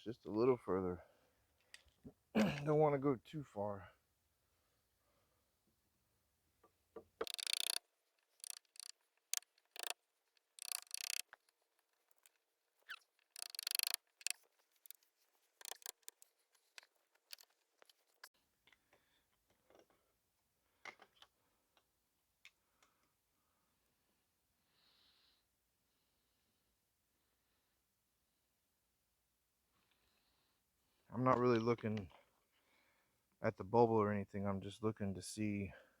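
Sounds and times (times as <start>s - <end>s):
hand tool scraping wood: 7.2s - 7.8s, 8.4s - 11.2s, 12.9s - 17.5s
sharp clicks and taps: 7.2s - 7.8s, 8.4s - 10.0s, 10.6s - 11.3s, 13.2s - 14.4s, 15.6s - 17.5s.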